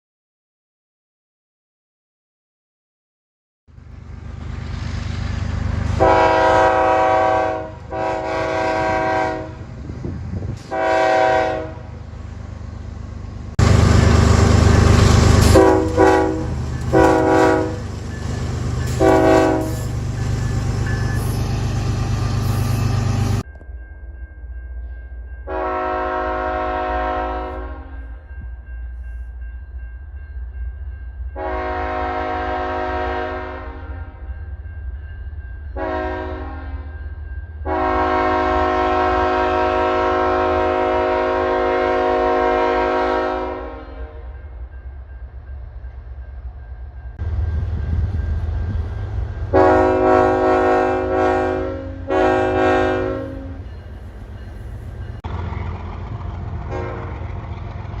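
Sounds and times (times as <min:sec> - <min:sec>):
train rumble: 0:03.7 - 0:58.0
locomotive air horn: 0:05.9 - 0:09.7, 0:10.6 - 0:12.0, 0:14.9 - 0:17.9, 0:18.9 - 0:19.9, 0:25.5 - 0:28.0, 0:31.4 - 0:34.2, 0:35.8 - 0:36.9, 0:37.6 - 0:44.4, 0:49.5 - 0:53.7, 0:56.7 - 0:57.2.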